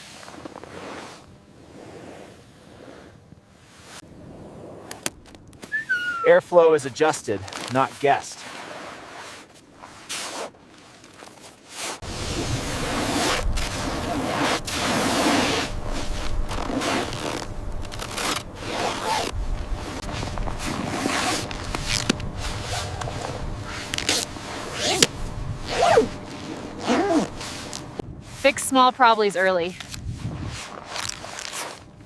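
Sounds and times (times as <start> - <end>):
clothing and gear rustling: 7.3 - 32.0.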